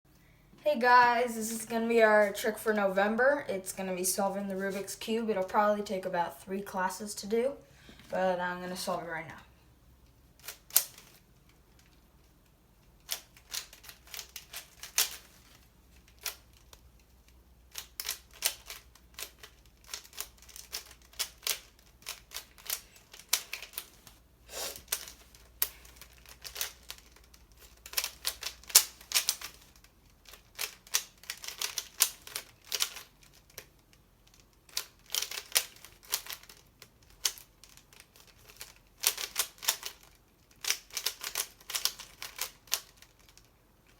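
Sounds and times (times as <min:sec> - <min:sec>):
puzzle cube plastic clicks: 0:10.4 - 0:24.0, 0:24.8 - 0:43.9.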